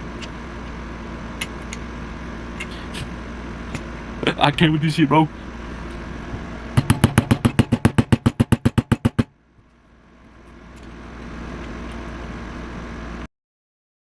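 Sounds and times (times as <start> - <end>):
hammer tapping metal: 6.8 - 9.3.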